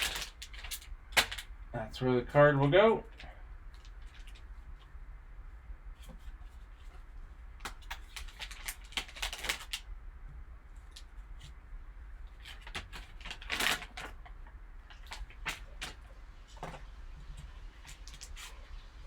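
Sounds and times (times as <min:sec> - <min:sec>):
plastic packaging crinkling: 0:00.0 - 0:01.6, 0:03.1 - 0:04.8, 0:07.6 - 0:09.9, 0:12.3 - 0:16.8.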